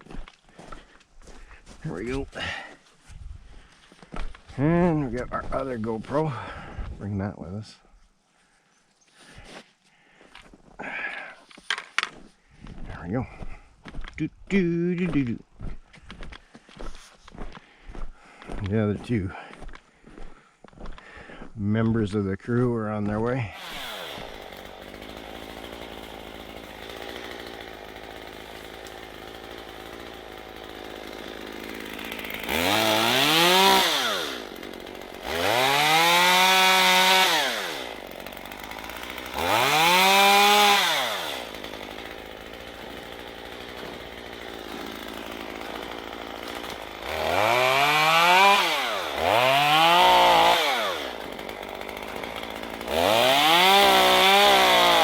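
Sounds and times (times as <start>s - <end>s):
chainsaw idling and revving: 0.0s - 2.8s, 22.9s - 55.0s.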